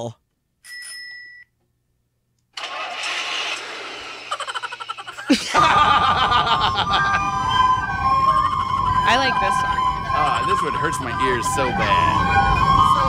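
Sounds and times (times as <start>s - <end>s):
harsh hissing pulses: 2.7s - 4.9s
electronic siren alarm: 5.6s - 13.0s.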